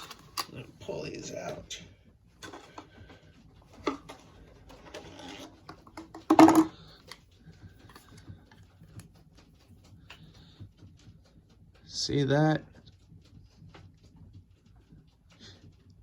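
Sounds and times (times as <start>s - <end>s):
metal tools clicking: 0.0s - 0.6s
packaging rustling: 0.0s - 0.6s
metal tools clattering: 3.8s - 7.2s.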